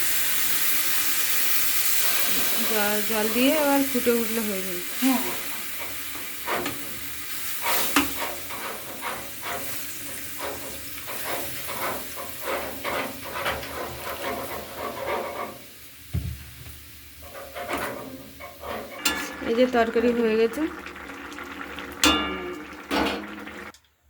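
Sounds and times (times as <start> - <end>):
food sizzling: 0.0 - 23.8
spatula scraping a pan: 5.4 - 15.7, 17.2 - 19.4
low thump: 16.1 - 16.8.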